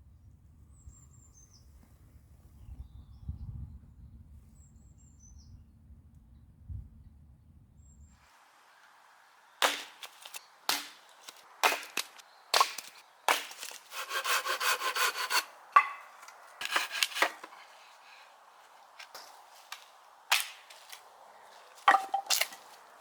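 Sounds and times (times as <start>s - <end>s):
sawing strokes: 9.6s - 23.0s
wood cracking: 9.6s - 23.0s.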